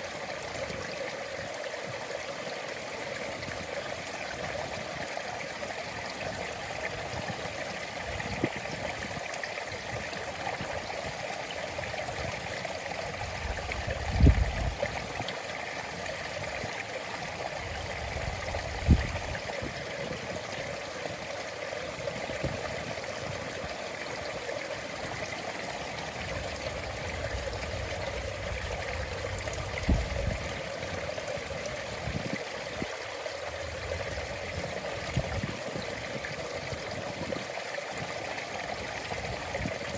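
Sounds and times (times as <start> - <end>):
stream water flowing: 0.0 - 39.9.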